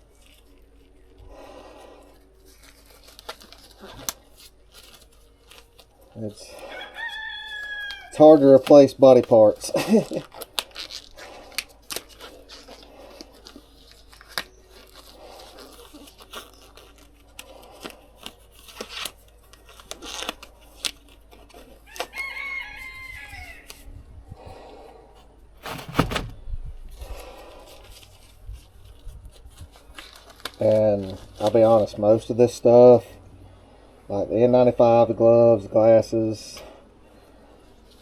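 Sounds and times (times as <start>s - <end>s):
rustling and handling noises: 0.0s - 33.3s, 34.5s - 38.0s
rooster crowing: 6.6s - 8.2s, 21.8s - 23.9s.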